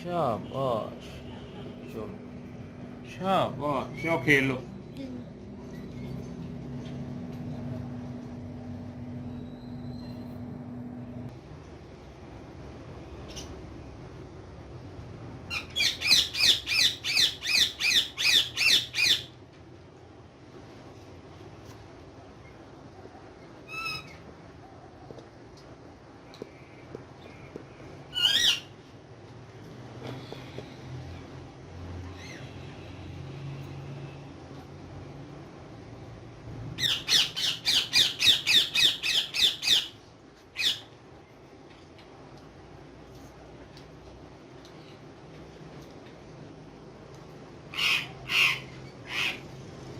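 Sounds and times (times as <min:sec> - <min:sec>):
parrot squawking: 0:15.5 - 0:19.4, 0:23.6 - 0:24.2, 0:28.1 - 0:28.7, 0:36.8 - 0:40.0, 0:40.6 - 0:40.9, 0:47.7 - 0:49.5.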